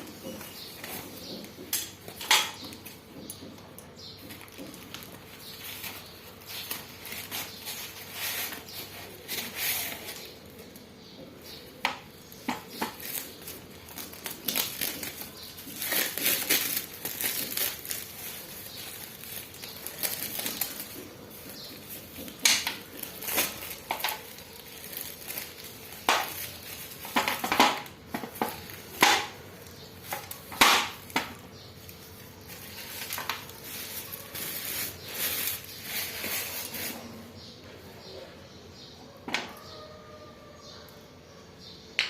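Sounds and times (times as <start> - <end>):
packaging rustling: 4.1 - 10.8, 12.2 - 29.0, 31.8 - 37.1
sharp packaging crackles: 4.2 - 10.9, 11.5 - 37.1.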